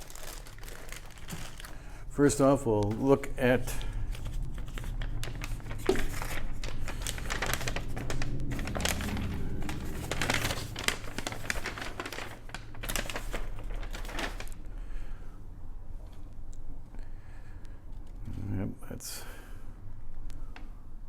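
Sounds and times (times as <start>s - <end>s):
paper crinkling and rustling: 0.0s - 2.0s, 2.7s - 14.7s.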